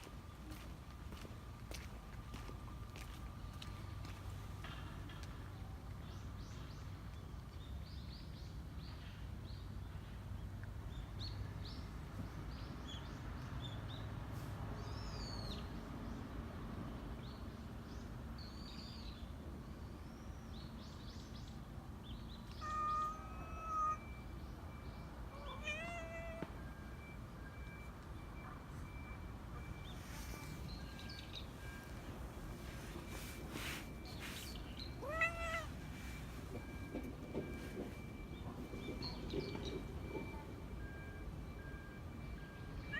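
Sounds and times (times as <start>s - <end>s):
cat meowing: 22.5s - 24.1s, 25.3s - 26.5s, 35.0s - 35.9s.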